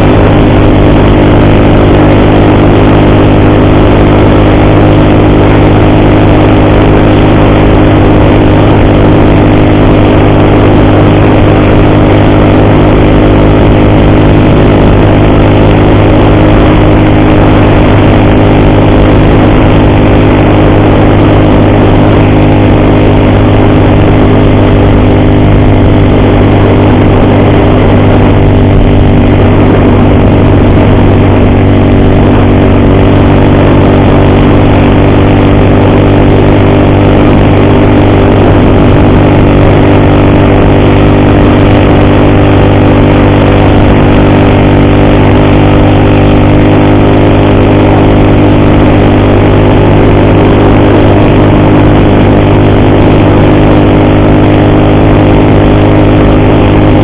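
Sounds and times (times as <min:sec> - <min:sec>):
constant rushing noise: 0:00.0 - 0:57.0
motorcycle engine cruising: 0:00.0 - 0:57.0.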